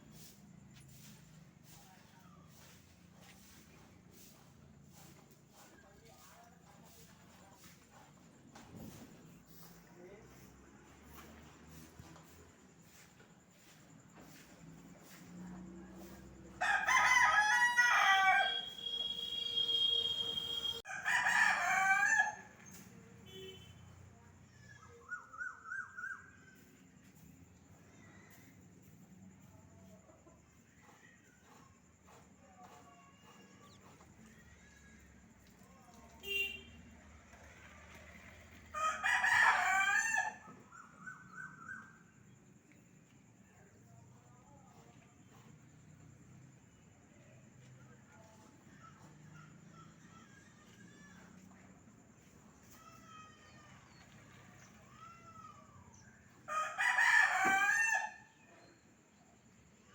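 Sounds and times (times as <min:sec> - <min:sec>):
rooster crowing: 0:16.6 - 0:22.5, 0:38.7 - 0:41.3, 0:56.5 - 0:58.4
short high call: 0:18.4 - 0:20.8.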